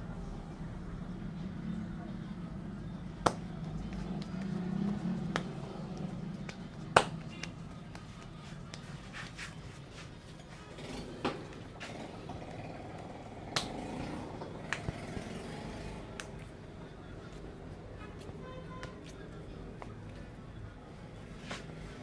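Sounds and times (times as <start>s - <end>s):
hands snapping and slapping: 3.2s - 9.4s, 13.5s - 15.0s, 16.1s - 16.6s.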